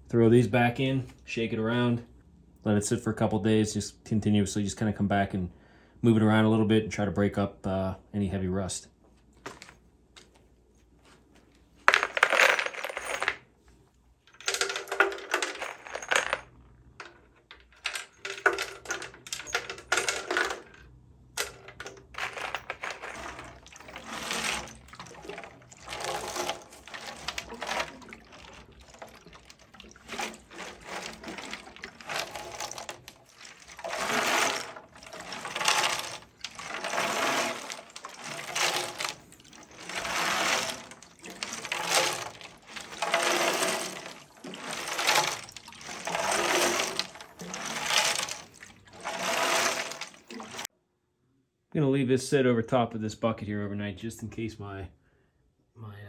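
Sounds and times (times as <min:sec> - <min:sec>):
screws rattling inside metal tank: 0:17.0 - 0:20.8, 0:21.4 - 0:50.7
liquid sloshing: 0:21.4 - 0:50.7.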